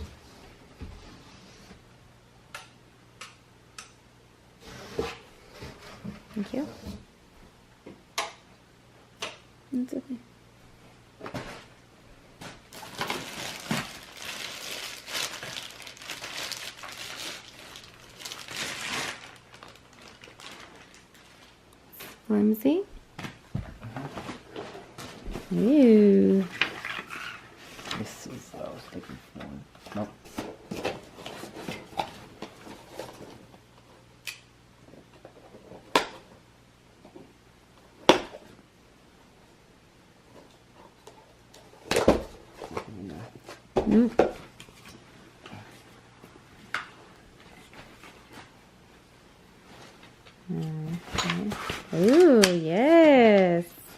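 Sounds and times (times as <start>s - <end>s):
plastic packaging crinkling: 12.4s - 21.7s, 51.2s - 53.3s.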